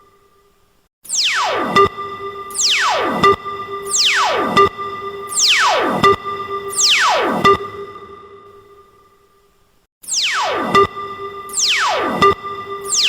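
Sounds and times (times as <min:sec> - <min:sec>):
steady held synth tone: 0:10.1 - 0:13.0
falling synth pitch sweep: 0:11.5 - 0:12.3.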